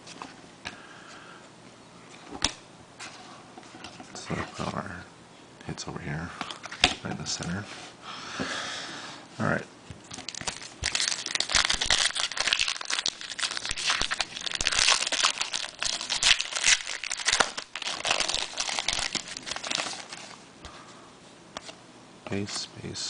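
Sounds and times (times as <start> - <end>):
wrapper crinkling and tearing: 10.1 - 20.4.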